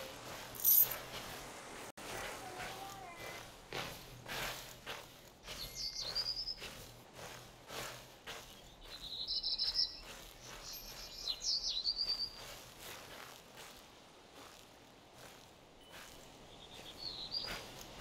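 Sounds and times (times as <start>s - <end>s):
soft rustling noise: 0.0s - 18.0s
bird singing with trills: 5.5s - 6.6s, 8.5s - 12.4s, 16.5s - 17.6s.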